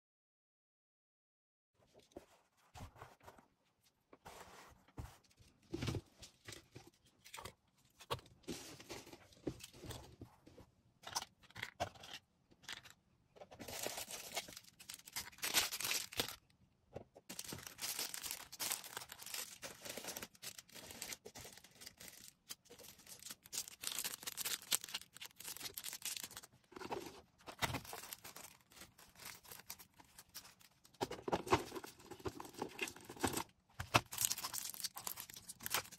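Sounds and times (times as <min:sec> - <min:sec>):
packaging rustling and tearing: 0:13.6 - 0:16.4, 0:17.3 - 0:35.9.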